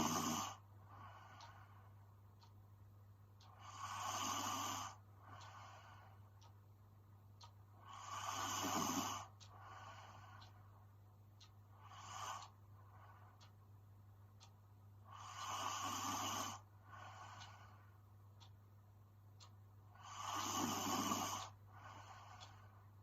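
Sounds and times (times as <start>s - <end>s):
woman snoring: 0.0s - 0.6s, 3.6s - 5.0s, 7.9s - 9.3s, 15.2s - 16.6s, 20.0s - 21.5s
soft breath out: 0.0s - 2.0s, 8.7s - 10.6s, 16.5s - 18.0s, 21.2s - 22.8s
low steady hum: 0.0s - 3.9s, 4.9s - 15.4s, 16.6s - 20.2s, 21.1s - 23.0s.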